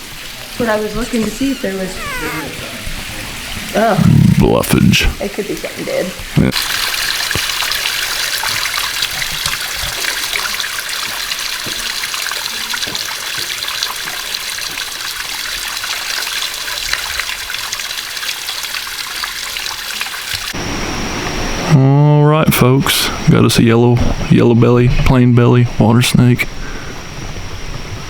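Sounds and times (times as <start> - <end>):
stream water running: 0.0 - 21.7.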